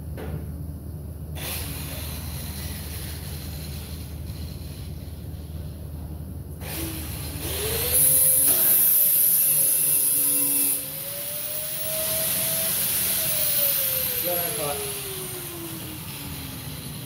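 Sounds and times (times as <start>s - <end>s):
grinder grinding metal: 6.7s - 17.0s.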